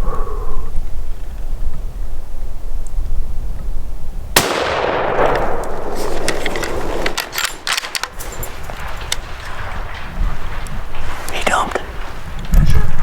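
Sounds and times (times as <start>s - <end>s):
rifle shot echoing: 4.4s - 10.0s
sharp clicks and knocks: 5.2s - 13.0s.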